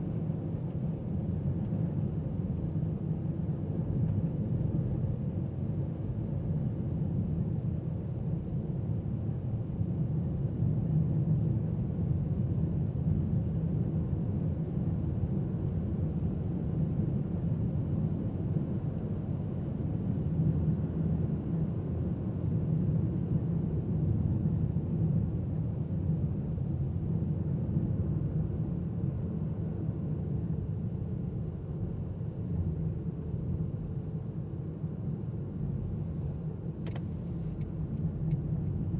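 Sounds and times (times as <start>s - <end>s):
car engine and tyre rumble: 0.0s - 38.9s.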